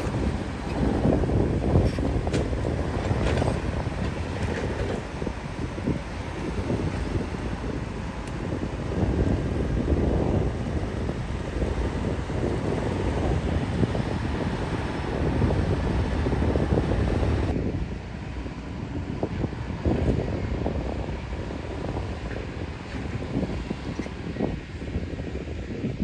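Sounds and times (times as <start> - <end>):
excavator diesel engine running: 0.0 - 20.5.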